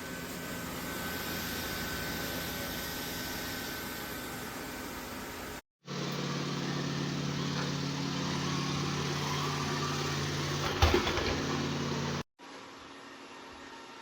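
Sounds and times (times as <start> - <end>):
robot vacuum running: 0.0 - 5.5, 6.2 - 12.2.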